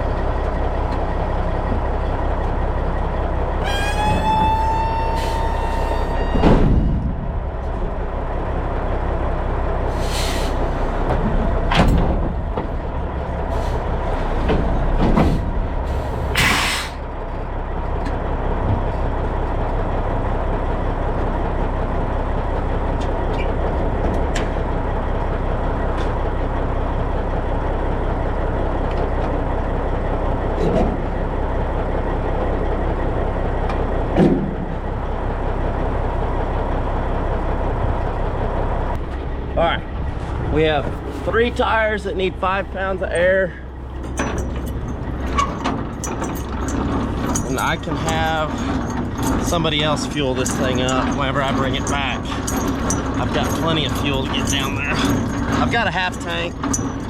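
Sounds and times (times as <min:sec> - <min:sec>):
truck engine idling: 0:00.0 - 0:57.0
short hisses: 0:16.4 - 0:17.0.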